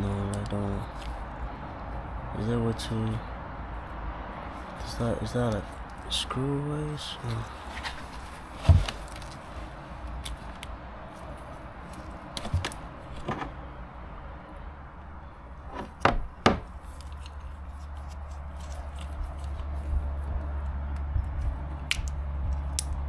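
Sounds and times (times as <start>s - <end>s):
hard plastic knocking and cracking: 12.4s - 13.5s, 15.8s - 16.8s.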